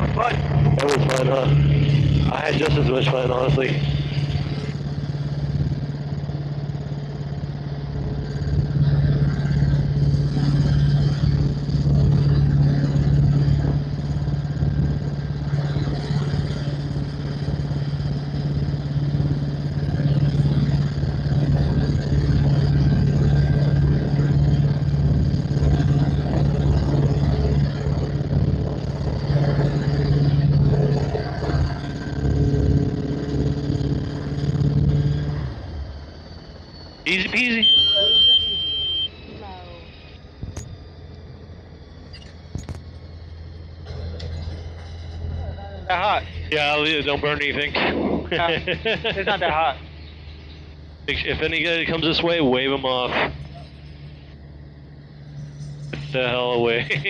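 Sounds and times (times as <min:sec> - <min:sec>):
low rapid rotor beat: 0:00.0 - 0:35.4
helicopter engine and rotor drone: 0:00.0 - 0:57.0.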